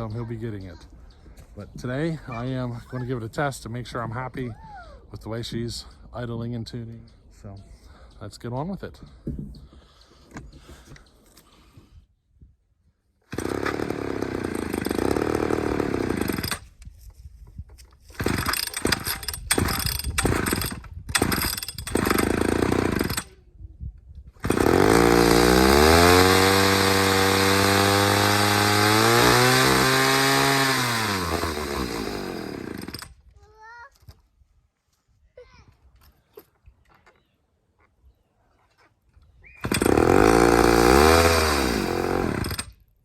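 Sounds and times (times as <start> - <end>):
chainsaw running: 13.3 - 16.7, 18.1 - 23.3, 24.4 - 33.2, 39.6 - 42.8.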